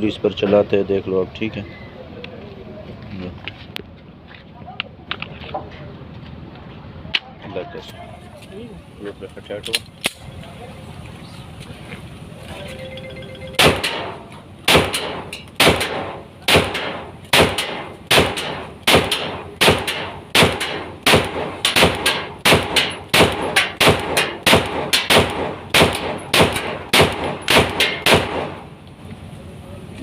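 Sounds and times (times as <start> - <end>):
pistol shots with echo: 13.6 - 28.6.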